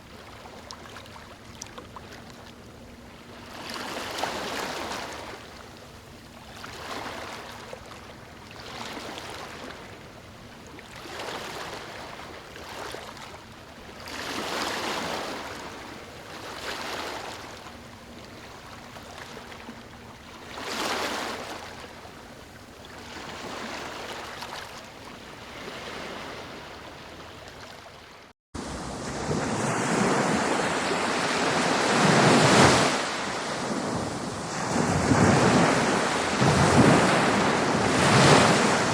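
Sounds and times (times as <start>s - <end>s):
water washing in gentle swells: 0.0s - 38.9s
wind: 0.0s - 38.9s
ocean surf: 25.4s - 27.4s, 28.6s - 38.9s.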